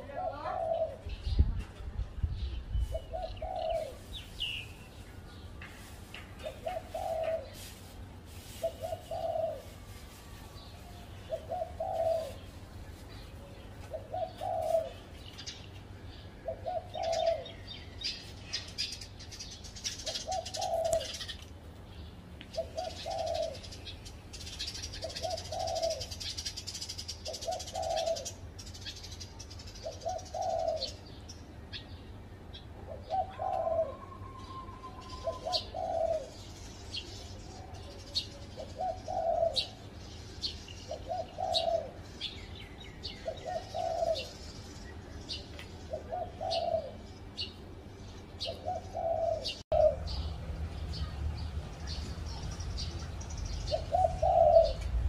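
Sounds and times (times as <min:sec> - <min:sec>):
dove cooing: 0:00.0 - 0:01.4, 0:02.9 - 0:04.6, 0:06.4 - 0:10.0, 0:10.8 - 0:12.5, 0:13.3 - 0:15.2, 0:16.4 - 0:17.7, 0:19.9 - 0:21.4, 0:22.6 - 0:23.8, 0:24.4 - 0:28.4, 0:29.8 - 0:31.2, 0:32.9 - 0:36.5, 0:37.6 - 0:39.8, 0:40.9 - 0:42.4, 0:43.0 - 0:44.5, 0:45.9 - 0:47.5, 0:48.4 - 0:50.3, 0:52.8 - 0:55.0
small birds chirping: 0:00.0 - 0:55.0.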